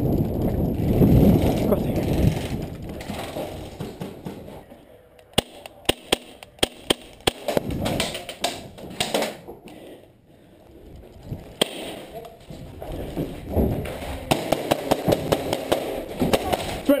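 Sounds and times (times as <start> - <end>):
airsoft gun shots: 11.6 - 12.0.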